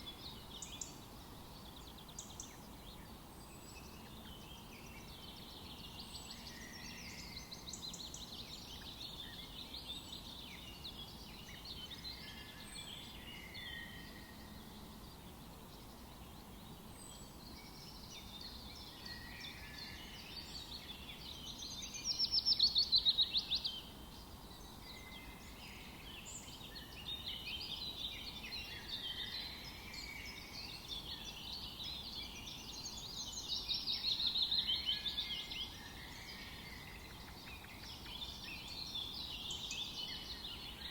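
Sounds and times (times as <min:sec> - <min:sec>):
birds chirping in chorus: 0:00.0 - 0:40.9
faint background hiss: 0:00.0 - 0:40.9
rapid bird trilling song: 0:00.0 - 0:40.9.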